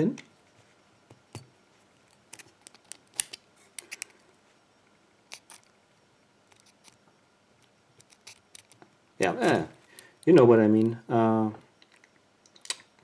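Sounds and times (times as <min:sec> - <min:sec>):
lock metal clicks: 0:02.3 - 0:04.1.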